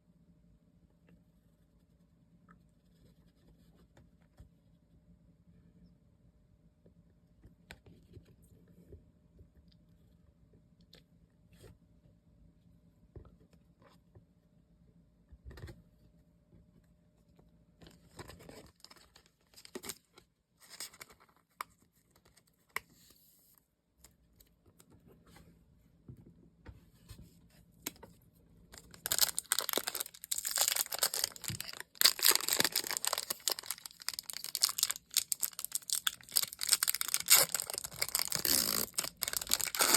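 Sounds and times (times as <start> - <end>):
packaging rustling: 28.8 - 39.9
plastic wrapping crinkling and tearing: 28.8 - 39.9.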